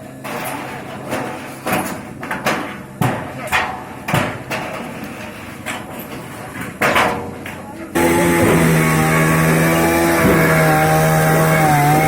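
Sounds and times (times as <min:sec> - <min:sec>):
voices: 0:07.5 - 0:12.0
hammer striking masonry: 0:08.0 - 0:12.0.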